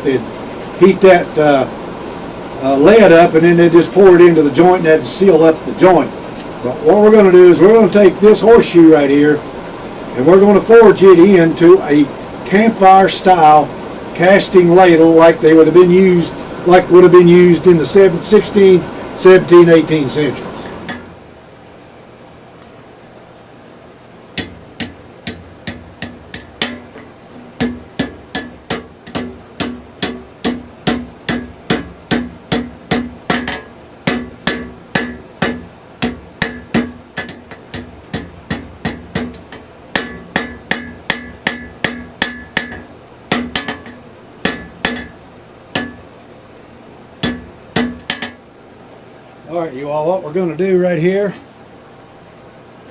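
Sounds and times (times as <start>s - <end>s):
hammer ringing on anvil: 27.6s - 39.4s, 40.0s - 45.2s, 45.8s - 46.1s.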